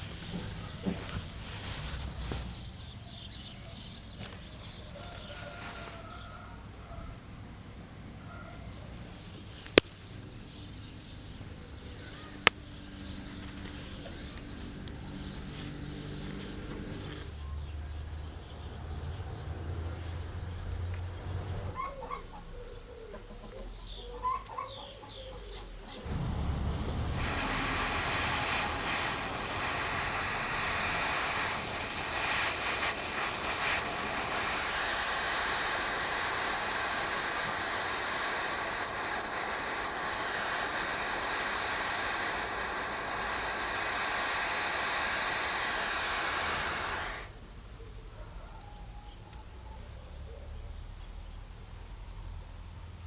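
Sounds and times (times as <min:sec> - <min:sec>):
loud steady hiss: 0:00.0 - 0:08.2, 0:08.9 - 0:19.0, 0:25.9 - 0:47.7.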